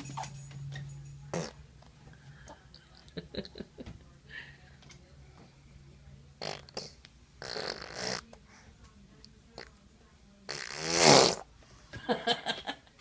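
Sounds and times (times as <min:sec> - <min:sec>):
child blowing raspberries: 0:06.4 - 0:08.2, 0:10.5 - 0:11.5.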